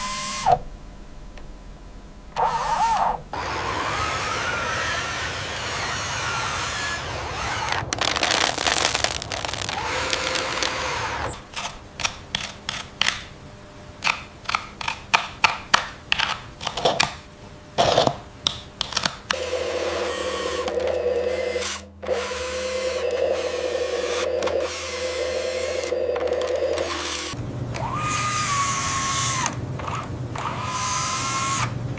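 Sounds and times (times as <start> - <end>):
motor hum: 0.0 - 11.6, 19.3 - 31.9
whirring motor: 2.4 - 11.4, 19.3 - 31.8.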